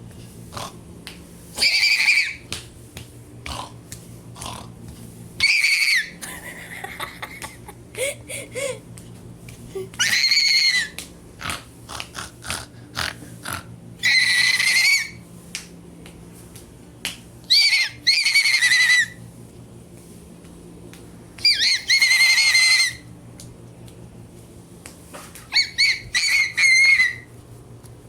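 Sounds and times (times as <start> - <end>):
shrill whistle-like squealing: 1.6 - 2.4, 14.0 - 15.2, 17.5 - 19.2, 21.4 - 23.0, 25.6 - 27.3.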